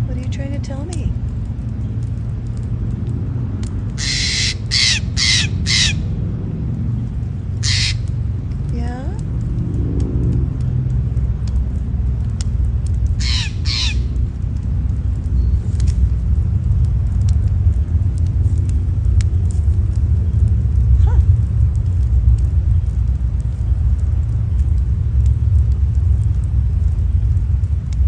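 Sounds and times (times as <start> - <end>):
low rumble: 0.0 - 28.0
crow cawing: 4.0 - 6.1, 7.6 - 8.1, 13.2 - 14.2.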